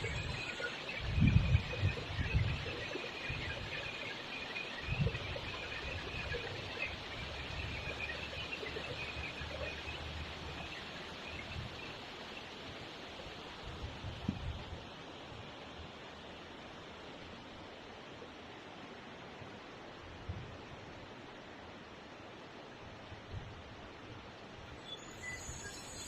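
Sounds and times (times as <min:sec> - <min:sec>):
faint high chirps: 0:00.0 - 0:12.0, 0:24.8 - 0:26.0.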